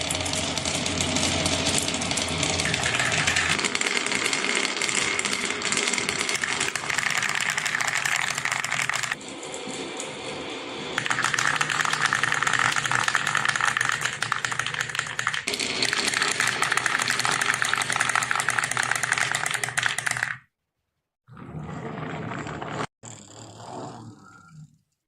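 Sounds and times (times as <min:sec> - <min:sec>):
marbles rattling down wooden run: 0:01.3 - 0:09.2, 0:11.0 - 0:20.4.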